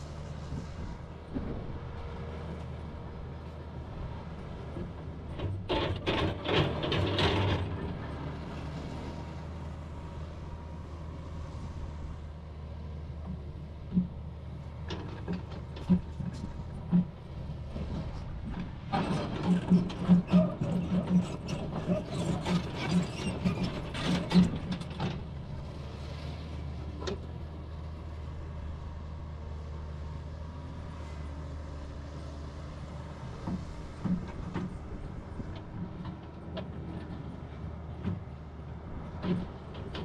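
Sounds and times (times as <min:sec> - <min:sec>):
diesel excavator running: 0:00.0 - 0:40.0.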